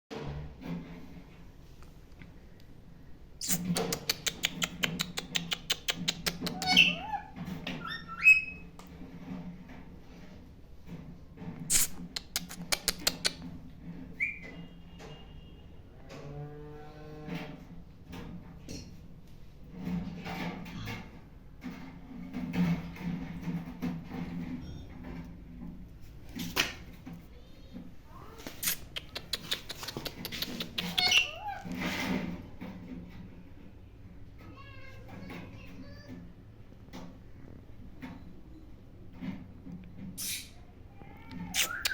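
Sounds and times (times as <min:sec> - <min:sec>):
sharp clicking taps: 0:03.8 - 0:06.7
parrots chirping and squawking: 0:06.0 - 0:08.6, 0:30.5 - 0:31.7
parrot sharp clicks: 0:11.7 - 0:13.4.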